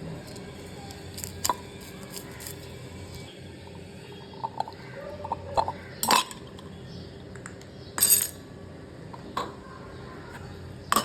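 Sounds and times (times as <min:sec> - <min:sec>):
cutlery and crockery clinking: 0:04.4 - 0:06.6, 0:08.0 - 0:08.4.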